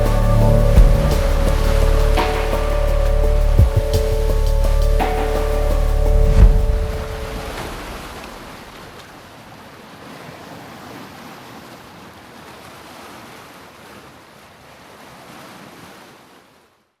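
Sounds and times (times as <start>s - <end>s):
sea waves washing: 0.0s - 10.1s.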